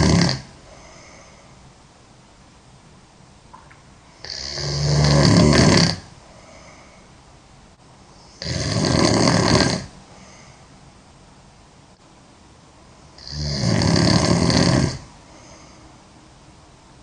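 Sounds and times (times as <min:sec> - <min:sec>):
girl snoring: 0:00.0 - 0:01.4, 0:04.2 - 0:06.9, 0:08.2 - 0:10.4, 0:13.1 - 0:15.8.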